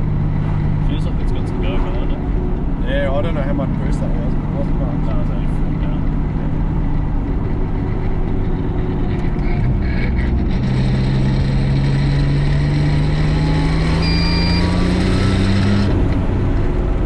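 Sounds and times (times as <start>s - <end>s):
car engine accelerating: 0.0s - 17.0s
faint high turbo whistle: 13.3s - 14.8s.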